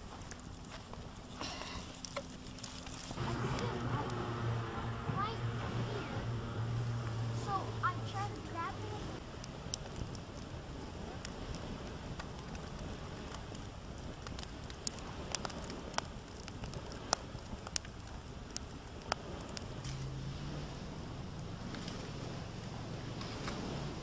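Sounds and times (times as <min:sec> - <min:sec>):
campfire crackling: 0:00.0 - 0:24.0
sharp pops from fire: 0:09.2 - 0:20.2.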